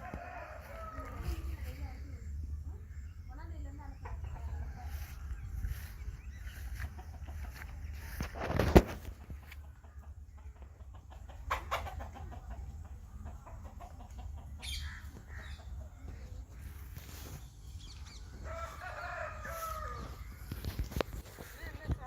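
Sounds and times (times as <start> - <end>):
birds calling: 0.4 - 12.0, 13.1 - 22.0
steady low rumble: 0.8 - 8.4.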